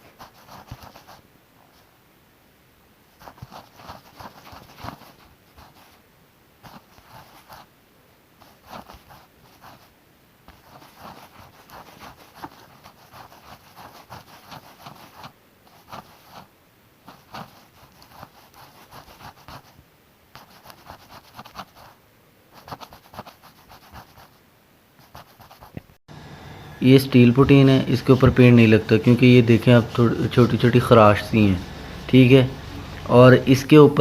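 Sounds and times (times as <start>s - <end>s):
sanding body filler by hand: 10.6s - 16.5s.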